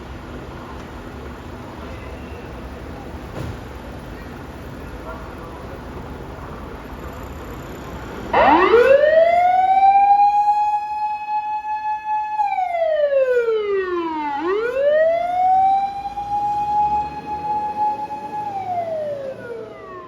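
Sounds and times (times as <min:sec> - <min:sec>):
low traffic rumble: 0:00.0 - 0:20.0
fire engine siren wailing: 0:08.3 - 0:20.0.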